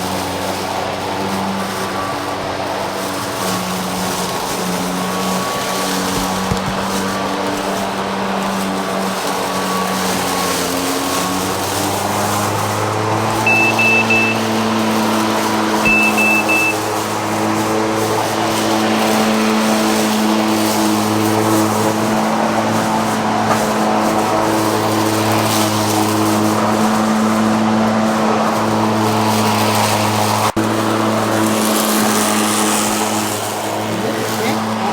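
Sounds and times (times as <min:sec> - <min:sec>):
lawnmower cutting grass: 0:00.0 - 0:34.9
short high beeps: 0:13.5 - 0:14.5, 0:15.9 - 0:16.8.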